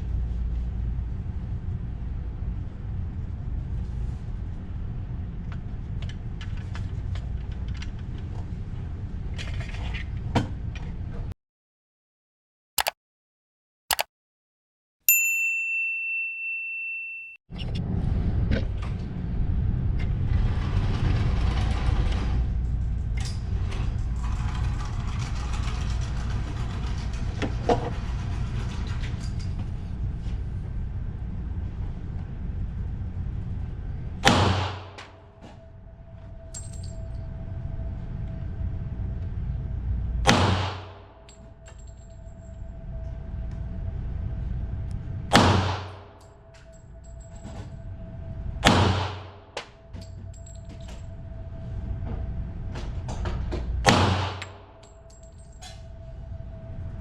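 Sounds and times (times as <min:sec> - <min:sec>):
low rumble with hiss: 0:00.0 - 0:11.3, 0:17.5 - 0:57.0
pistol shots: 0:40.3 - 0:40.9, 0:53.9 - 0:54.5.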